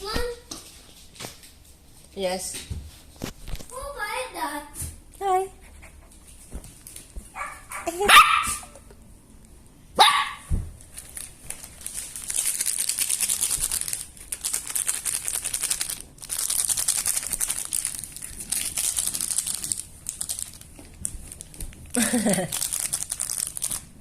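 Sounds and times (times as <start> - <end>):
puppy yelp: 7.3 - 8.7, 10.0 - 10.5
plastic crinkling: 10.8 - 24.0.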